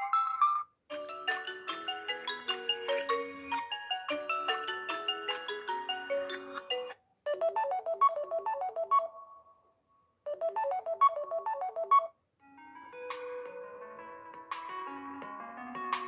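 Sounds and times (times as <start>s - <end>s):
ringtone with long held notes: 0.0s - 12.1s
phone ringtone melody: 0.9s - 9.4s, 10.3s - 12.1s.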